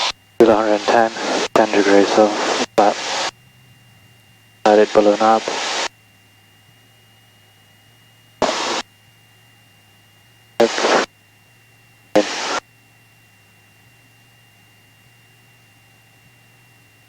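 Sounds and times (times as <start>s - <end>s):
radio static bursts: 0.0s - 3.3s, 4.7s - 5.9s, 8.4s - 8.8s, 10.6s - 11.1s, 12.2s - 12.6s
faint low hum: 0.3s - 5.9s, 10.6s - 11.1s, 12.2s - 12.6s
intercom click: 4.7s - 5.9s, 8.4s - 8.8s, 10.6s - 11.1s, 12.2s - 12.6s.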